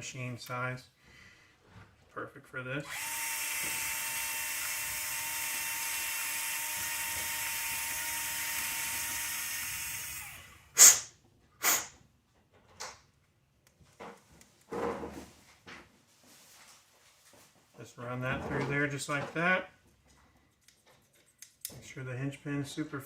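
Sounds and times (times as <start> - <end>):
power tool whining: 2.8 - 11.0.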